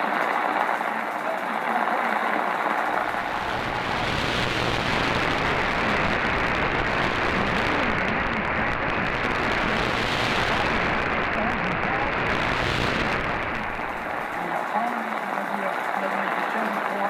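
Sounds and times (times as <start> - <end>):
faint radio broadcast: 0.0 - 17.0
shortwave radio static hiss: 0.0 - 17.0
low rumble: 3.0 - 14.4.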